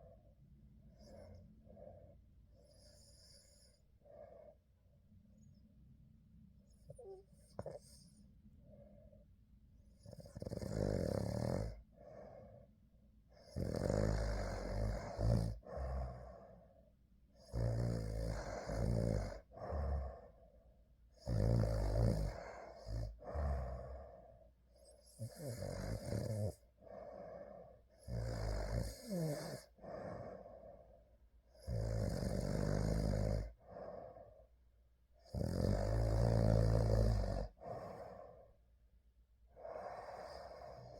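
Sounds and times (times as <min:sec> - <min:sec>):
person snoring: 0:13.5 - 0:16.4, 0:17.5 - 0:20.3, 0:21.2 - 0:24.1, 0:25.2 - 0:30.6, 0:31.6 - 0:34.2, 0:35.3 - 0:38.4.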